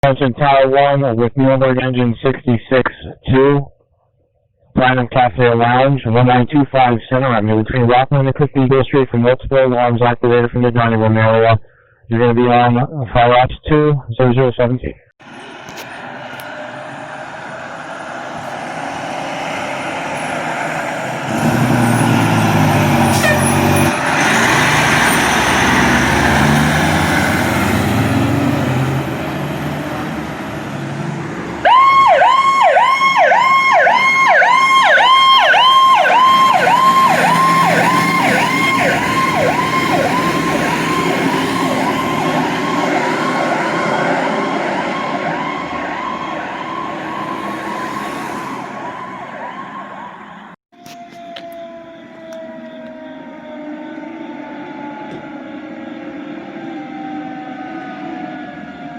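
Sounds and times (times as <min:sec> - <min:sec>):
heavy truck engine: 0:15.2 - 0:32.7, 0:35.3 - 0:50.6
electronic siren yelping: 0:31.6 - 0:58.9.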